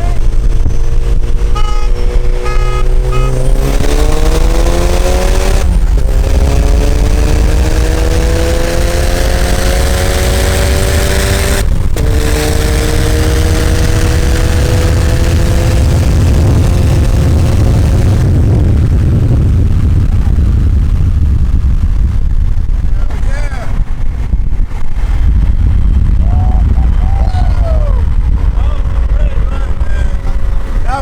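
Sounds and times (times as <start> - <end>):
car engine under full throttle: 0.0 - 31.0
short beeps: 1.6 - 3.8.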